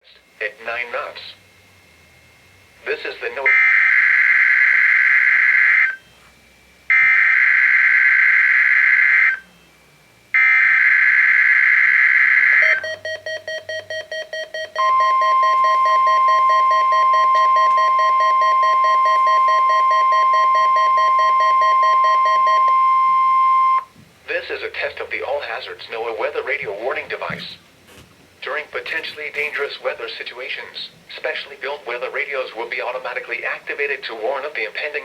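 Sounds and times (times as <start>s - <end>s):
steady high alarm tone: 0.0s - 27.3s
low tone beeping rapidly: 12.6s - 23.9s.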